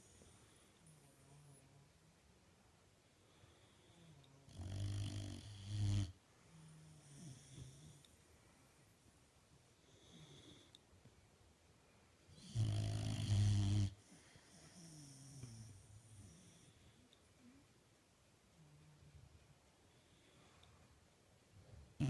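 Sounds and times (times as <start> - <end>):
dog snoring: 4.5 - 6.2, 6.9 - 8.0, 12.4 - 16.7.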